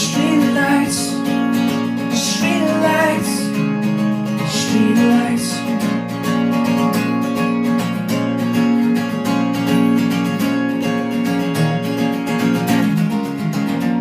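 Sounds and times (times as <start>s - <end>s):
person singing: 0.0s - 3.7s, 4.4s - 6.0s
acoustic guitar strumming: 0.0s - 14.0s.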